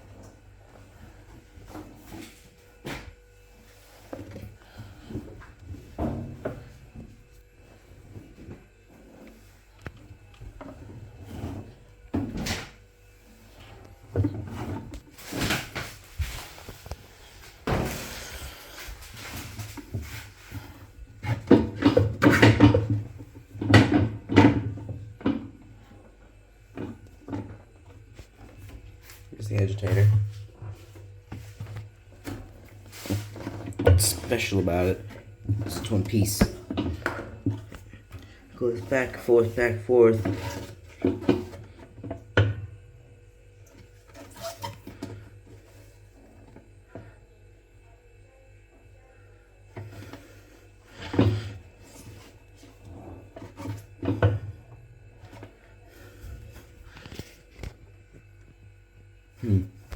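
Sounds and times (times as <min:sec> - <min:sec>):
low steady hum: 0:00.0 - 0:59.9
washing machine knocks and clunks: 0:05.0 - 0:07.2, 0:17.5 - 0:25.6, 0:32.2 - 0:37.8, 0:38.6 - 0:42.9, 0:53.4 - 0:55.5.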